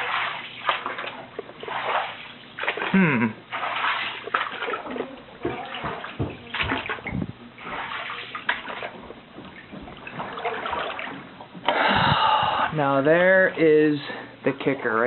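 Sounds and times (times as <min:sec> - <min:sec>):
floodwater sloshing and splashing: 0:00.0 - 0:12.7.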